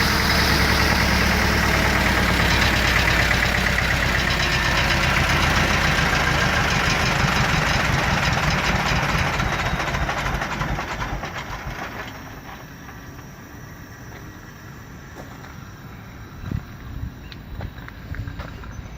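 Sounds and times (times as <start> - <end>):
air compressor clattering: 0.0 - 13.4.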